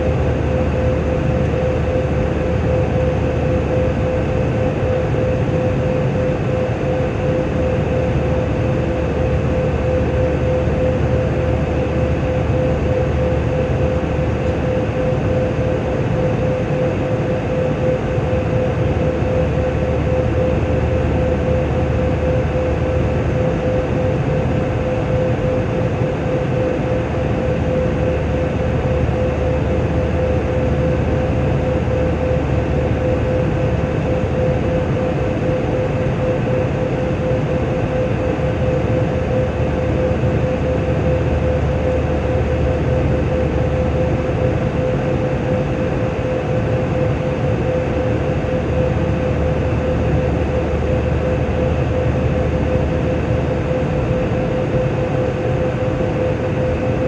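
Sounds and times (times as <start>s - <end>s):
steady whine: 0.0s - 57.0s.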